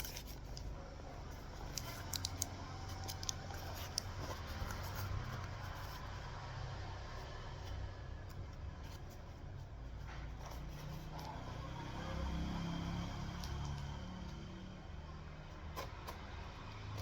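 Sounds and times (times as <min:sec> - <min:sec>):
packaging rustling and clicking: 0:00.0 - 0:05.8.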